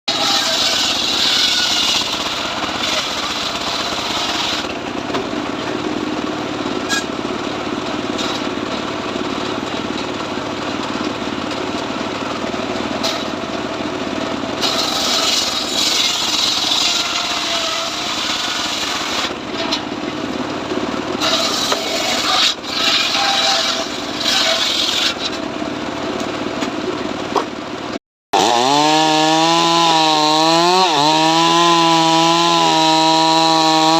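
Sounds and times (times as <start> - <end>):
chainsaw cutting wood: 0.1 - 4.8, 14.6 - 19.4, 21.2 - 25.3, 28.4 - 33.9.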